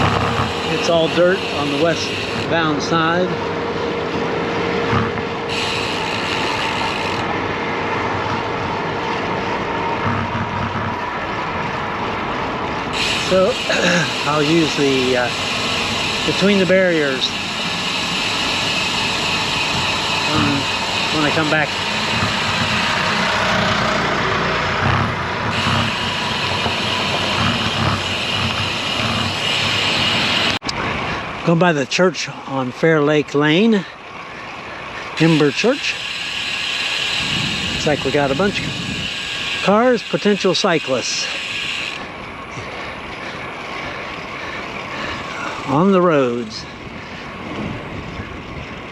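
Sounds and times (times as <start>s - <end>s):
bike tyre noise on road: 0.0s - 48.9s
wind buffeting microphone: 17.3s - 31.5s, 37.1s - 39.3s, 46.4s - 48.9s
wind on microphone: 37.2s - 39.2s, 46.6s - 48.9s.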